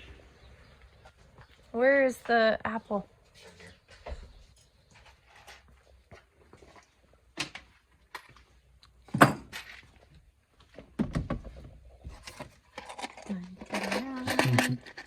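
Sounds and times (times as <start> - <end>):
knocks and thumps: 10.8 - 12.5.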